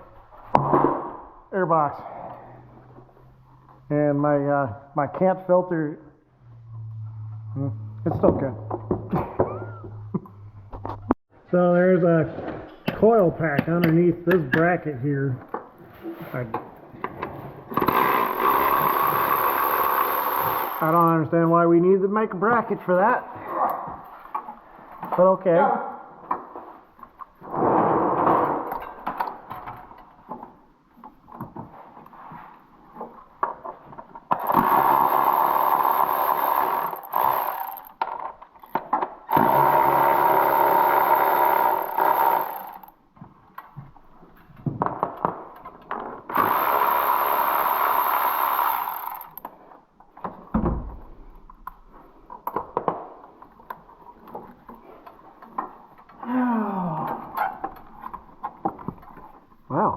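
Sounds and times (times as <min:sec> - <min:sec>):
cordless power tool whining: 0:17.8 - 0:21.1, 0:34.4 - 0:38.0, 0:39.3 - 0:42.9, 0:46.3 - 0:49.4
hand tools clicking and knocking: 0:33.4 - 0:43.0, 0:44.5 - 0:49.5.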